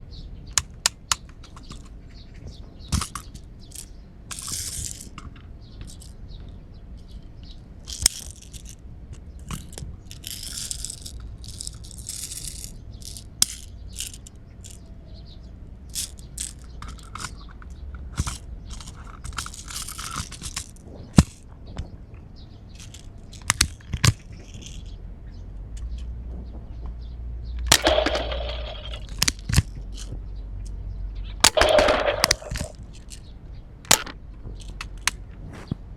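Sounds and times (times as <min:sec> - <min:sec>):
plastic toy gun clicks: 0:09.4 - 0:14.8, 0:22.8 - 0:24.8, 0:27.6 - 0:30.1, 0:31.4 - 0:33.2, 0:33.9 - 0:35.2.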